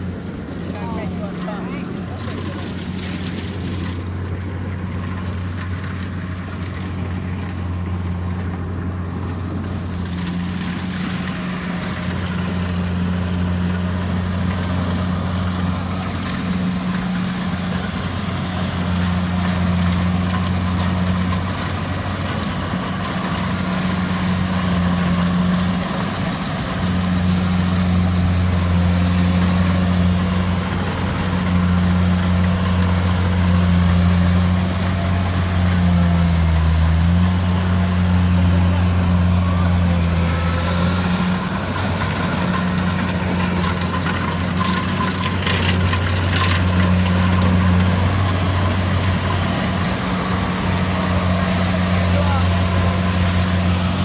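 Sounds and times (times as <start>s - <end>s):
busy mechanical noise: 0.0s - 54.0s
diesel engine humming: 0.0s - 54.0s.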